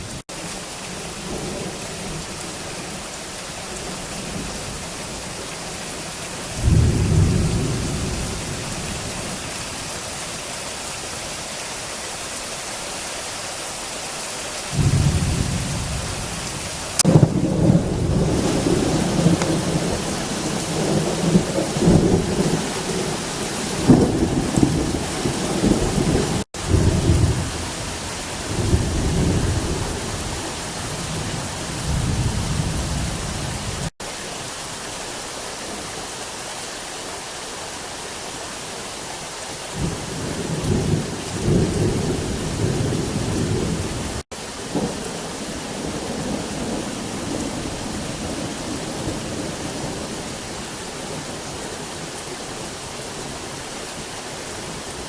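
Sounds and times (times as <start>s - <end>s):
heavy rain falling: 0.0s - 55.0s
thunder rumbling: 6.4s - 9.4s, 14.7s - 33.9s, 39.8s - 50.2s
sharp crack of thunder: 6.5s - 9.1s, 14.7s - 33.1s.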